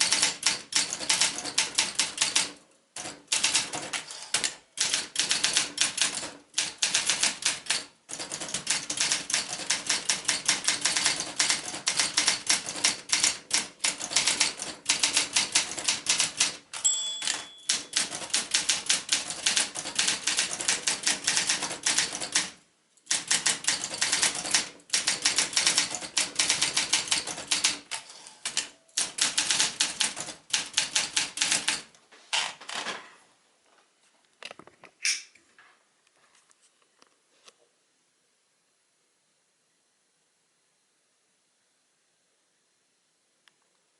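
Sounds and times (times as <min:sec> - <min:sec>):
typewriter margin bell: 0:00.0 - 0:06.2, 0:06.9 - 0:22.5
manual typewriter typing: 0:00.0 - 0:32.8.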